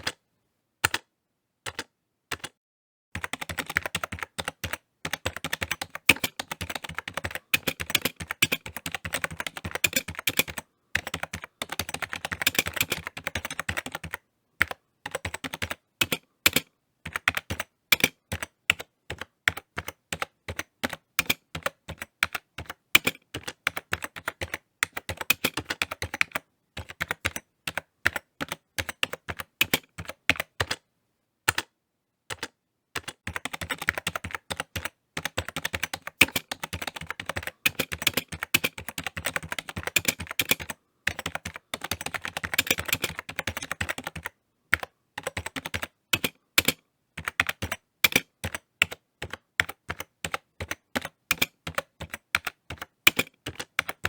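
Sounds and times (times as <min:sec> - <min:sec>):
typing on computer keyboard: 0:00.0 - 0:00.2, 0:00.8 - 0:02.6, 0:03.2 - 0:30.8, 0:31.5 - 0:31.7, 0:32.3 - 0:54.0.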